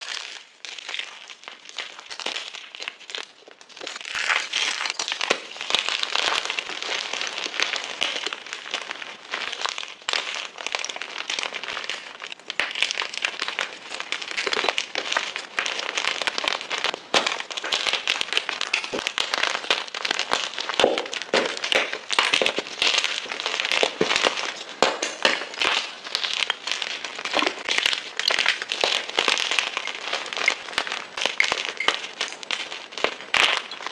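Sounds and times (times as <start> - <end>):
chalk blocks crunching: 0.0 - 33.9.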